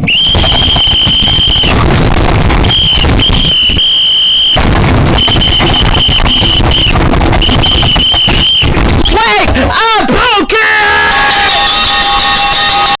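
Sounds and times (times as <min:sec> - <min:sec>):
shrill high-pitched tone blasts: 0:00.0 - 0:09.3, 0:10.9 - 0:13.0
heavy crackling noise: 0:00.0 - 0:10.3.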